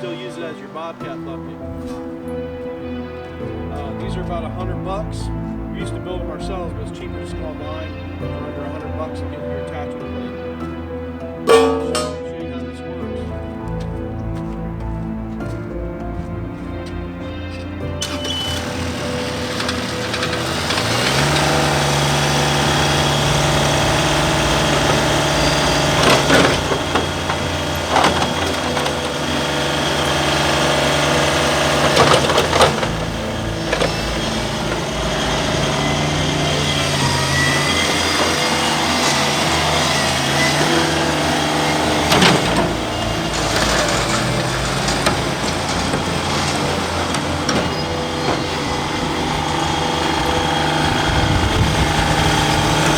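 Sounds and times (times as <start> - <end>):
skid steer engine revving: 0.0 - 52.9
sharp metal clanks: 11.5 - 12.4, 18.0 - 52.9.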